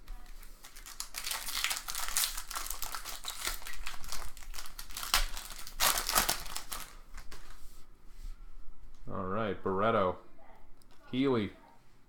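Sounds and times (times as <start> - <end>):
foil wrapper crinkling: 0.1 - 7.6.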